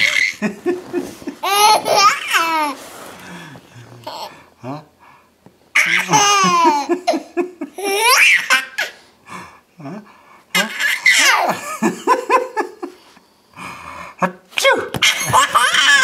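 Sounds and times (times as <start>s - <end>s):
small child laughing: 0.0s - 2.8s, 5.8s - 9.0s, 10.6s - 11.9s, 15.0s - 16.0s.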